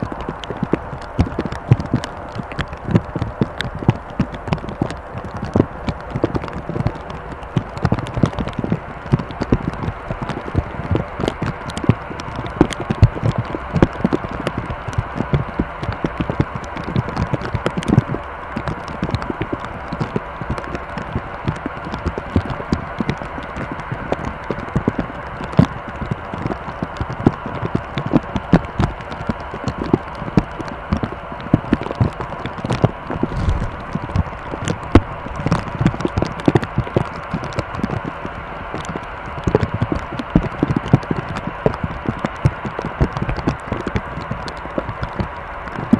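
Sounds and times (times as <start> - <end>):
jet engine hum: 29.8 - 45.9.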